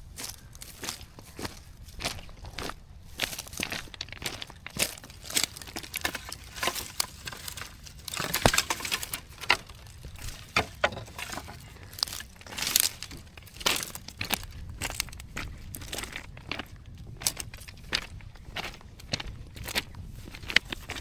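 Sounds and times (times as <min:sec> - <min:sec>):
dry twigs crunching and snapping: 0:03.4 - 0:15.2.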